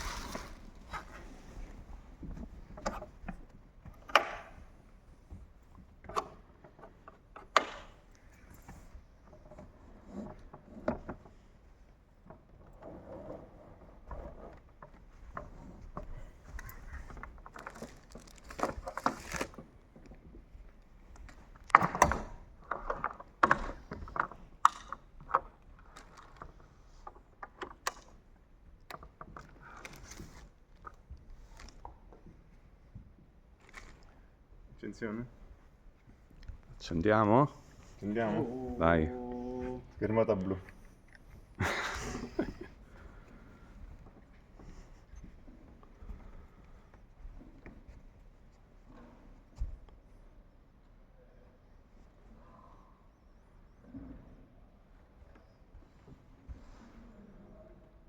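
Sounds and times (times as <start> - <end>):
clicks and knocks of handling: 0.9 - 13.4, 14.0 - 32.5.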